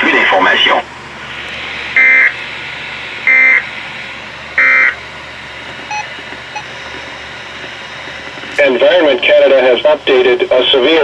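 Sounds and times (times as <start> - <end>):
buzzy electronic alert beeps: 2.0 - 2.3, 3.3 - 3.6, 4.6 - 5.0, 5.9 - 6.7.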